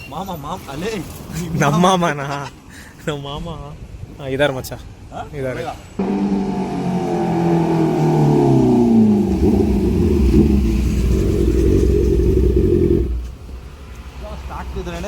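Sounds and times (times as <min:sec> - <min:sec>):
motorcycle exhaust rumble: 0:06.0 - 0:13.5.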